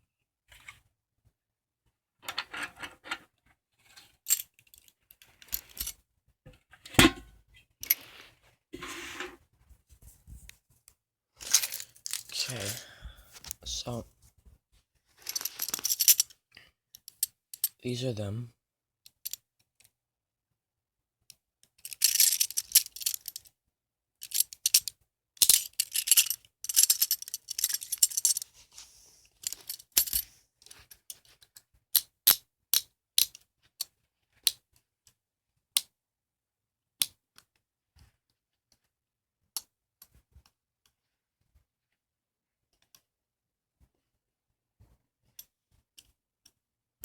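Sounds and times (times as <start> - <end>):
sharp handcuff clicks: 32.0 - 33.4.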